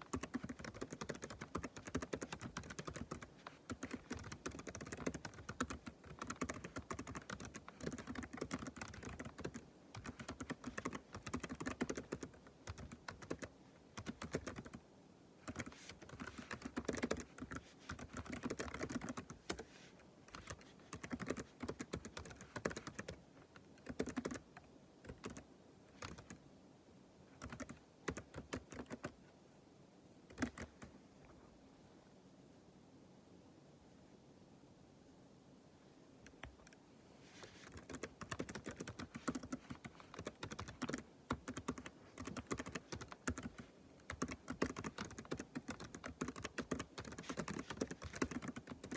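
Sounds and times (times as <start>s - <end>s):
typing on computer keyboard: 0.0s - 14.8s, 15.4s - 19.7s, 20.3s - 23.2s, 23.8s - 25.4s, 26.0s - 26.4s, 27.4s - 29.2s, 30.3s - 30.9s, 37.6s - 48.9s.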